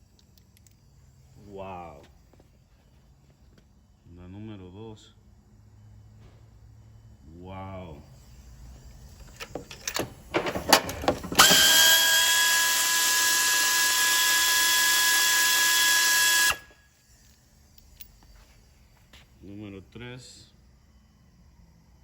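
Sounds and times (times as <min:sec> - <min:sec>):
tool handling clicks and knocks: 0:09.2 - 0:11.9
power tool whining: 0:10.7 - 0:16.8.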